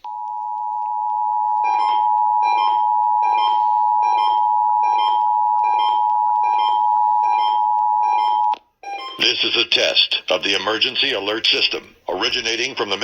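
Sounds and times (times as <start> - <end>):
short beeps: 0.1 - 9.4
two-tone alert signal: 0.1 - 9.5.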